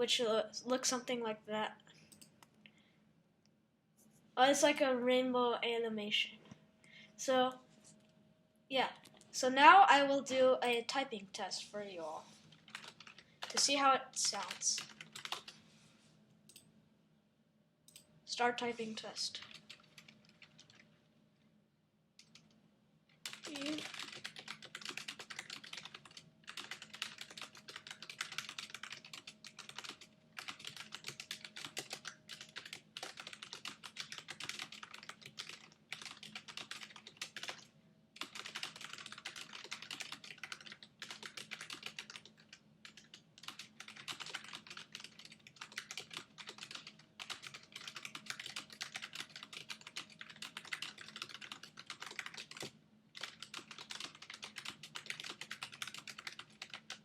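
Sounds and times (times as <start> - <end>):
fast typing on mechanical keyboard: 12.5 - 15.6, 19.4 - 20.8, 22.2 - 22.5, 23.2 - 57.0.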